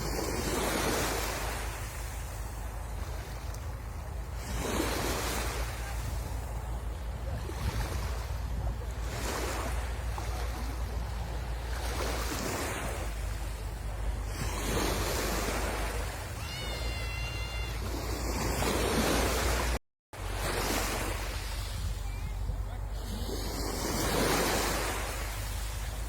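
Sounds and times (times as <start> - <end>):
wind rumbling on microphone: 0.0 - 16.4, 17.4 - 26.0
sea waves washing onto shore: 0.0 - 26.0
high whistle-like call: 16.4 - 18.0.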